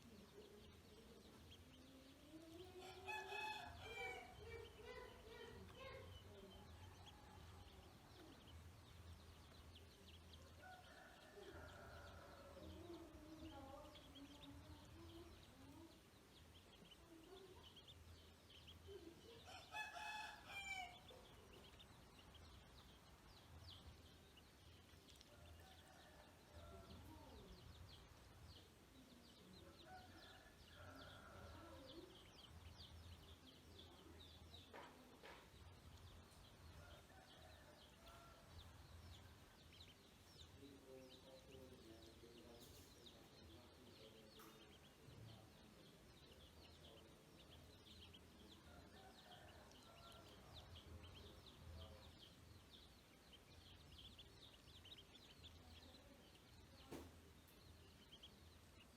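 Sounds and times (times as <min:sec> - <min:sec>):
distant rooster crowing: 0:02.8 - 0:04.4, 0:10.6 - 0:12.9, 0:19.4 - 0:21.1, 0:48.6 - 0:51.3.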